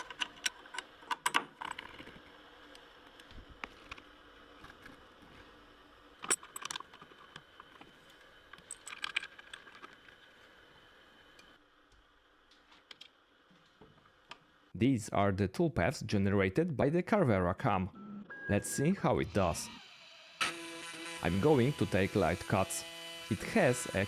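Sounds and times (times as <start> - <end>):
metal parts clinking: 6.2 - 7.3, 8.5 - 9.9.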